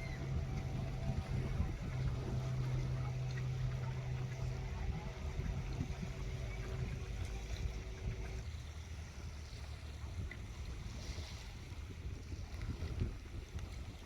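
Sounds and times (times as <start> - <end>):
motor humming: 0.0 - 9.3
low outdoor rumble: 0.0 - 14.0.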